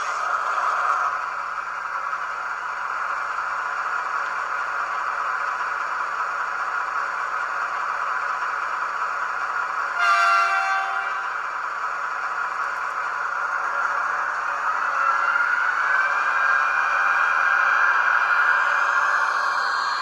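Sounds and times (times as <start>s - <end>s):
model diesel engine sound: 0.0s - 20.0s
locomotive horn blast: 10.0s - 11.3s.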